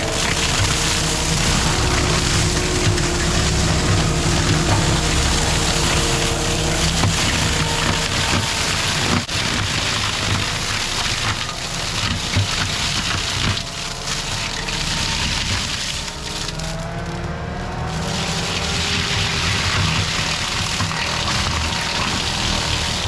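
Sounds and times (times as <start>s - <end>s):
engine rumble: 0.0s - 23.0s
mulcher grinding brush and wood: 0.0s - 23.0s.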